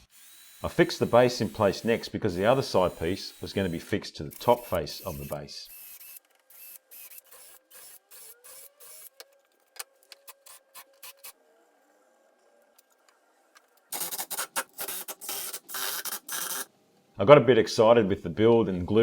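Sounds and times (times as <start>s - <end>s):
power drill driving screws: 0.0s - 9.3s
rough workshop noise: 0.0s - 11.4s.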